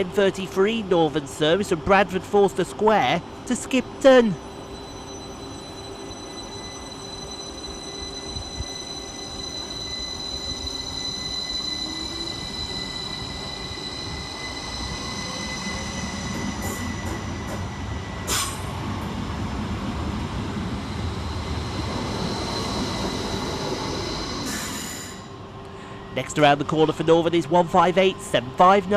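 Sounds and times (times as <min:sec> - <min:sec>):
electric train whine: 0:00.0 - 0:28.9
wheels rumbling on rail: 0:05.5 - 0:25.8.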